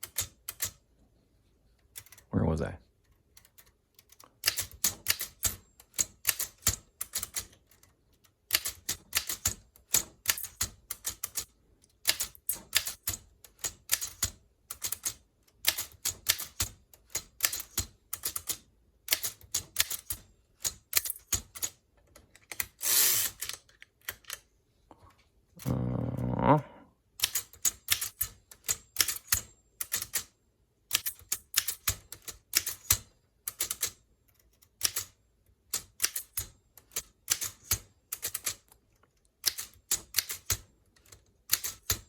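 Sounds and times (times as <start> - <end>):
typewriter rasping: 22.5 - 23.6.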